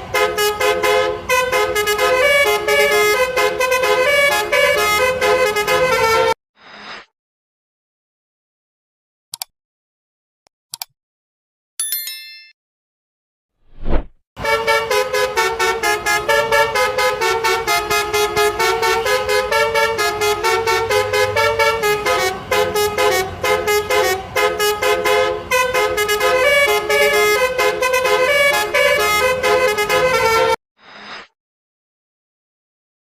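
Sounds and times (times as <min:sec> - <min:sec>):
multi-tone bus horn tune: 0:00.0 - 0:06.4, 0:14.4 - 0:30.6.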